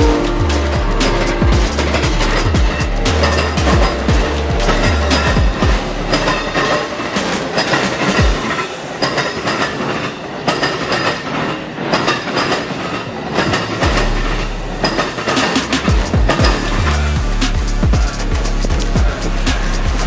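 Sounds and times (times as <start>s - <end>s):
train wheels clacking: 0.0s - 14.0s.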